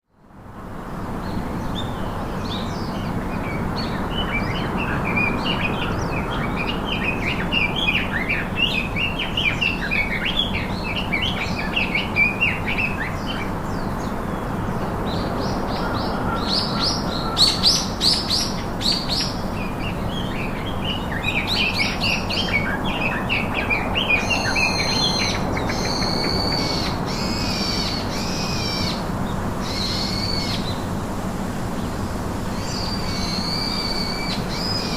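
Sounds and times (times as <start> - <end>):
birds chirping and singing: 1.3 - 30.8.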